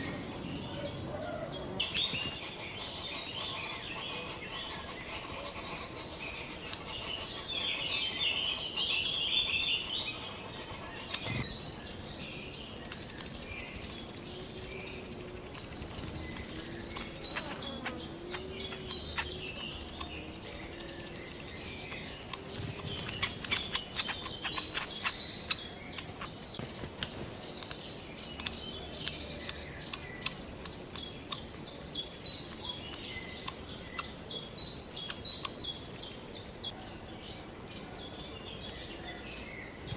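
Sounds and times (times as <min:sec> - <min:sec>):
songbirds chirping: 0:00.0 - 0:39.9
sharp clicks: 0:22.3 - 0:26.1, 0:27.0 - 0:31.5.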